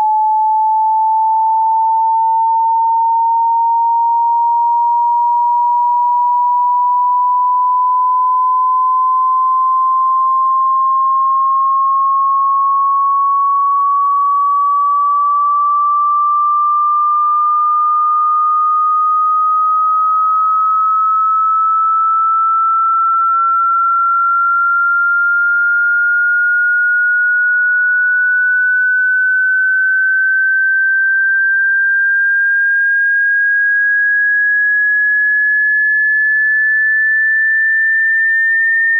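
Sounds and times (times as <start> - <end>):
sine tone sweeping upward: 0.0 - 38.9.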